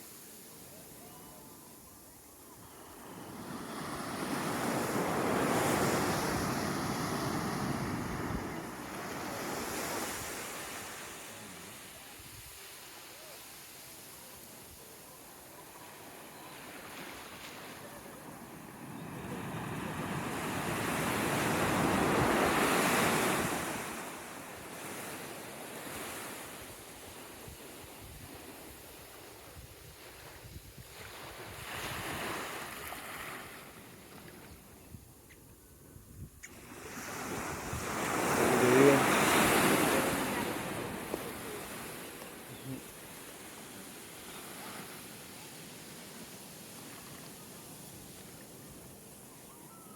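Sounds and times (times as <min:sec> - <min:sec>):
ocean wave washing: 0:36.5 - 0:47.6.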